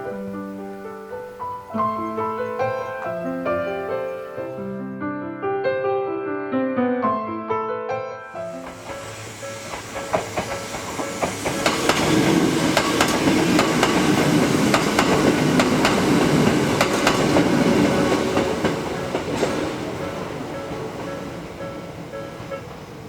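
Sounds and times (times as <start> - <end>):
train wheels clicking over rail joints: 8.5 - 23.0.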